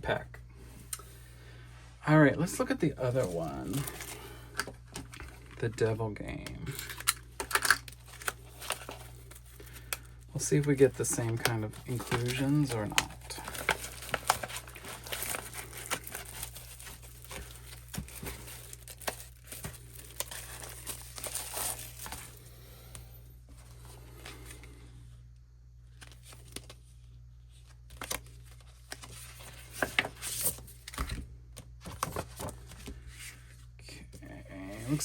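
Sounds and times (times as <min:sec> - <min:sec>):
packaging crinkling and rustling: 0:02.4 - 0:22.5, 0:25.9 - 0:33.4.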